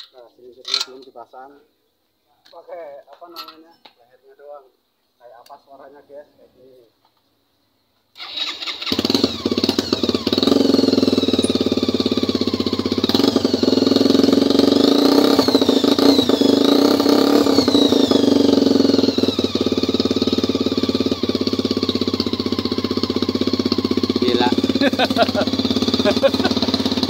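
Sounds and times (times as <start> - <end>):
motorcycle engine popping exhaust: 9.0 - 27.0.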